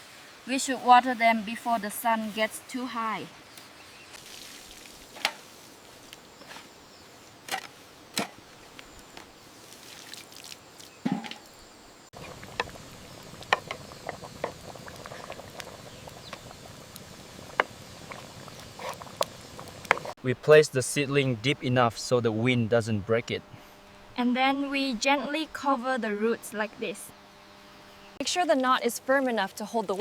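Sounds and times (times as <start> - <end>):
water pouring onto plants: 4.2 - 6.1, 9.4 - 11.0.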